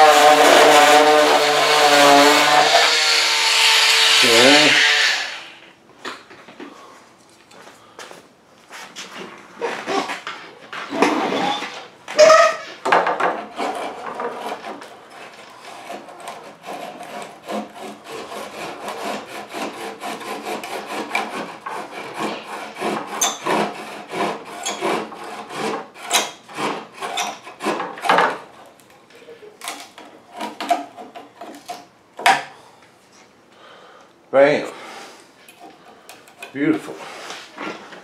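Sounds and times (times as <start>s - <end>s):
hand saw sawing: 0.0s - 5.6s, 13.3s - 28.6s, 30.0s - 31.9s.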